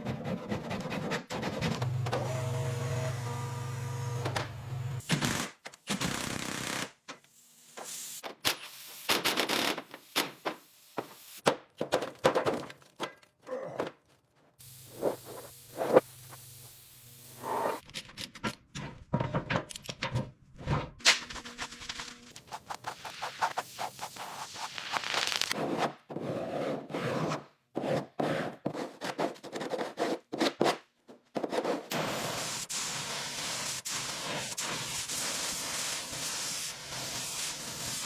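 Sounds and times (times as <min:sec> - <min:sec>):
knocks and scrapes of tools: 0:17.6 - 0:21.8.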